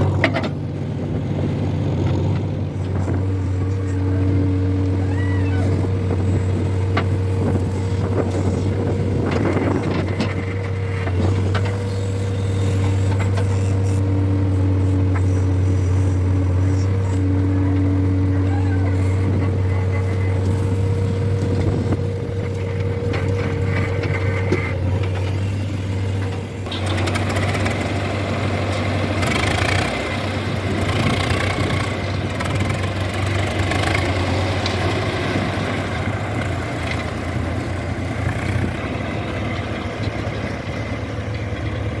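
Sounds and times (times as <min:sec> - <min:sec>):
diesel engine idling: 0:00.0 - 0:42.0.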